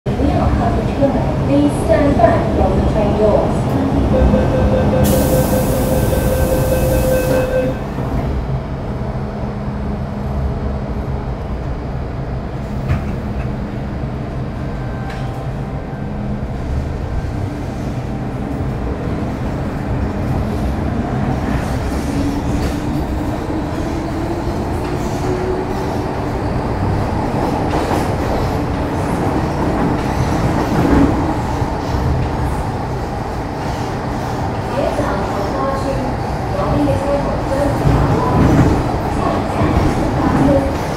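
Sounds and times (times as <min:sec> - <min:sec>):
train wheels on rail: 0:12.5 - 0:40.9.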